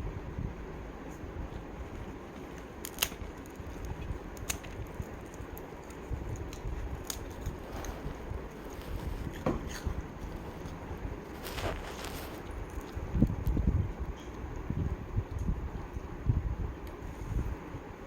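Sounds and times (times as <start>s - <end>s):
dog crunching chips: 2.4s - 13.0s.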